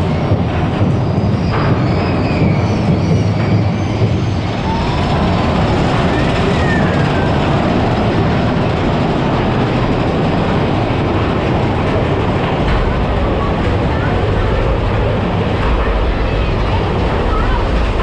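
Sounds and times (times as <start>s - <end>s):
roller coaster rumbling on track: 0.0s - 18.0s
high wheel squeal: 0.8s - 8.2s.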